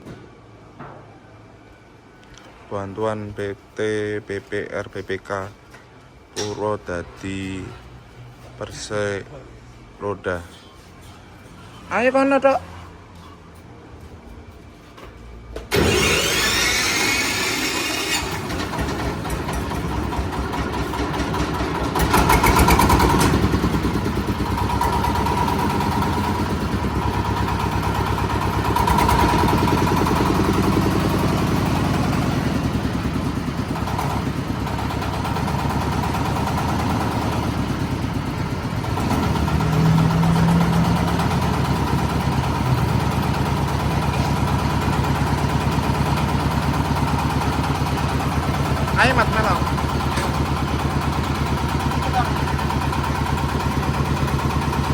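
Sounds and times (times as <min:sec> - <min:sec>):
engine running: 0:15.6 - 0:54.9.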